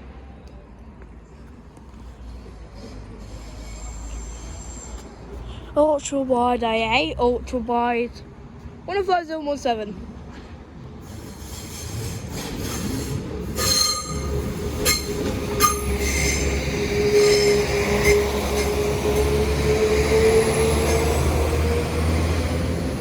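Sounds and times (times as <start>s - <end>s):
train running: 1.5s - 5.4s, 10.0s - 23.0s
train wheels squealing: 2.8s - 5.3s, 11.0s - 22.6s.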